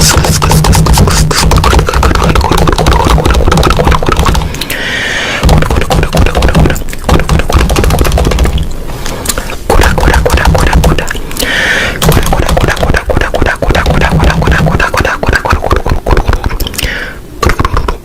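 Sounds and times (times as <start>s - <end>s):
distorted rapid clicks: 0.0s - 4.7s, 5.4s - 8.8s, 9.7s - 11.4s, 12.0s - 16.8s
heavy bass: 5.4s - 8.7s.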